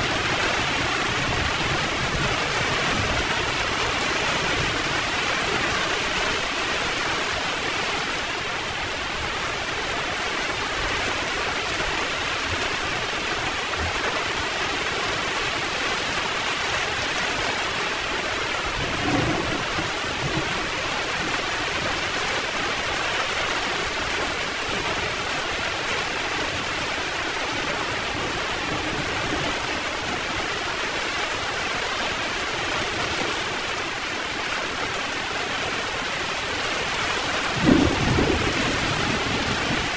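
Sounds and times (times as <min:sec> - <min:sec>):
heavy rain pouring: 0:00.0 - 0:39.9
low rumble of thunder: 0:18.7 - 0:20.8, 0:37.4 - 0:39.9.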